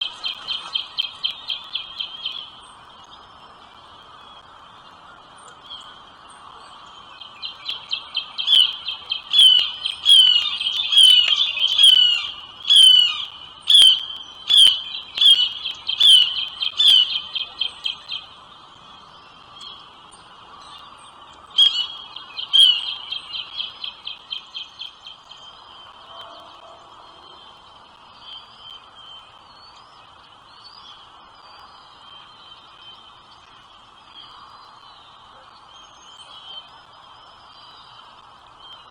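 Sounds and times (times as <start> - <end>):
nestling birds chirping: 0.0 - 38.0
faint background hiss: 0.0 - 38.9
sharp down-slurred bird calls: 6.8 - 35.1.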